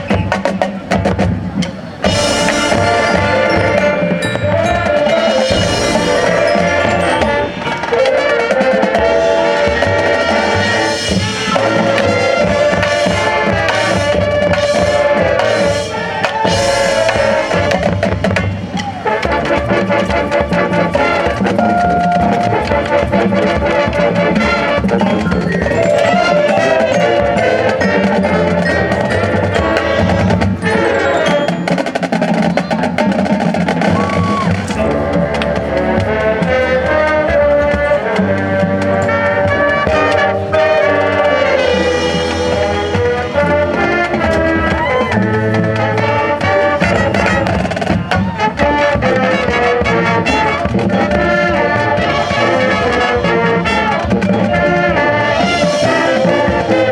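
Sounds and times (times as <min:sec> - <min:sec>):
snare and bass drums: 0:00.0 - 0:56.9
brass melody: 0:02.0 - 0:56.9.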